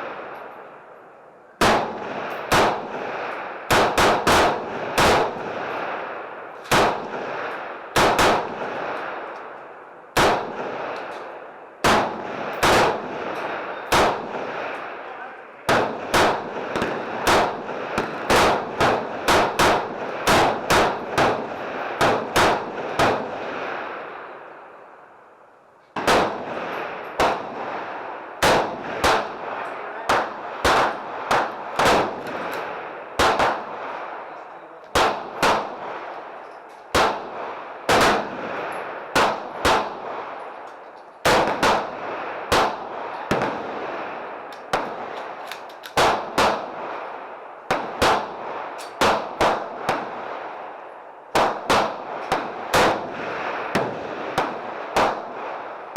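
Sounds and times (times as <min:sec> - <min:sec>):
gunshots with ringing echo: 0:01.6 - 0:24.7, 0:26.0 - 0:45.2.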